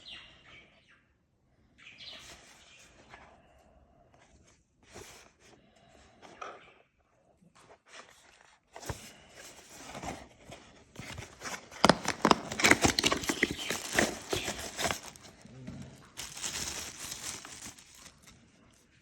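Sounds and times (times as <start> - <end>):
packaging crackling and tearing: 11.0 - 15.4, 16.1 - 18.4.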